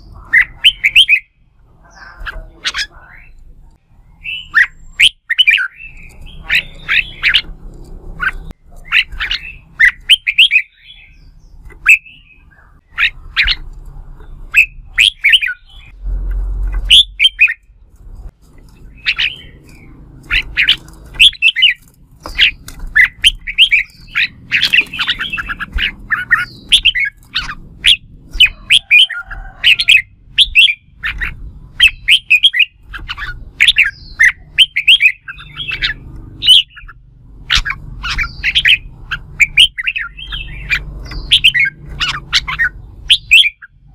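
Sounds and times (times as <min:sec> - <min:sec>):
bird chirping song: 0:00.0 - 0:43.9.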